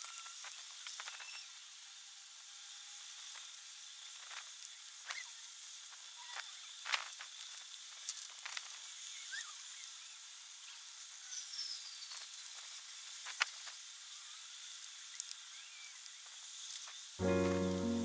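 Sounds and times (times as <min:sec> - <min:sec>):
faint high hiss: 0:17.2 - 0:18.0.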